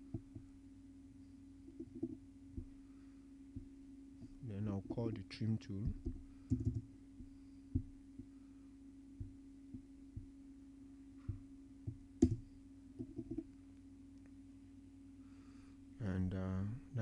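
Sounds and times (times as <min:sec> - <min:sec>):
steady low hum: 0:00.0 - 0:17.0
computer mouse and keyboard clicks: 0:05.8 - 0:06.9.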